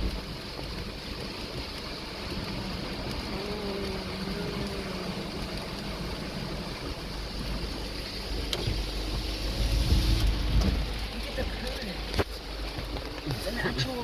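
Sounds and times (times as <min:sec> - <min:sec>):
flowing floodwater: 0:00.0 - 0:14.0
heavy rain: 0:00.0 - 0:14.0
vehicles driving through water: 0:00.0 - 0:14.0.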